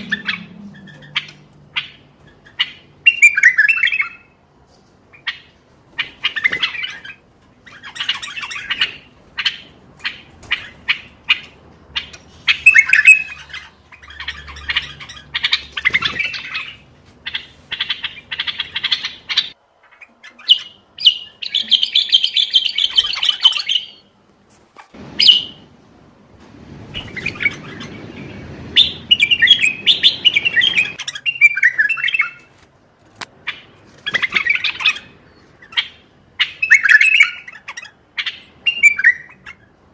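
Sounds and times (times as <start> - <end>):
sharp bird calls: 0.0 - 4.4, 5.1 - 24.2, 25.1 - 25.6, 27.0 - 32.5, 33.4 - 39.9
bird singing whistled phrases: 3.0 - 4.3, 12.6 - 13.4, 28.8 - 32.4, 36.5 - 37.6, 38.7 - 39.4.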